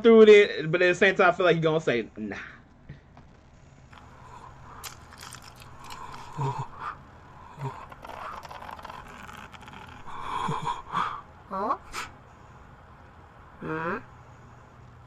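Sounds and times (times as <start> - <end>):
faint breathing: 4.0 - 8.9, 10.0 - 13.0
short low vocal sounds: 13.6 - 14.1.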